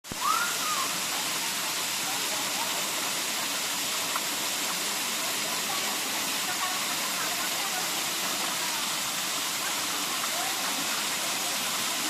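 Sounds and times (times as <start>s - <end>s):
waterfall pouring: 0.1s - 12.0s.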